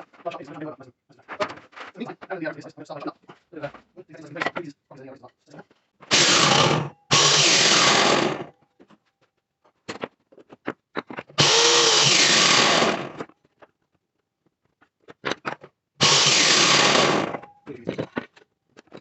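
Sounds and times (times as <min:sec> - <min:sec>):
power tool running: 0:06.1 - 0:08.5, 0:11.4 - 0:13.3, 0:16.0 - 0:17.5
handling clicks and knocks: 0:17.5 - 0:19.0.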